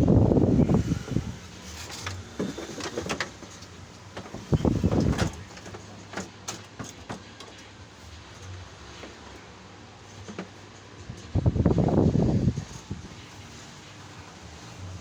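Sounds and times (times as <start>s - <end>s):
rustling clatter: 0.7s - 15.0s
plastic parts clicking and knocking: 2.0s - 7.7s.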